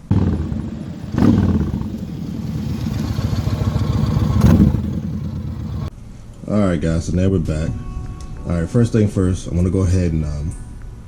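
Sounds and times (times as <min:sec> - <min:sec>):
motorcycle engine revving: 0:00.0 - 0:05.9.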